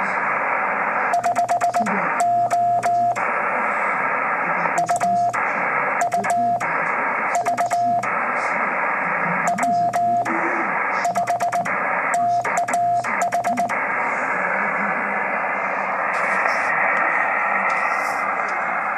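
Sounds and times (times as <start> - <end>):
radio hiss: 0.0 - 18.9
morse code beeps: 1.1 - 3.3, 4.8 - 5.4, 6.0 - 8.1, 9.4 - 13.8.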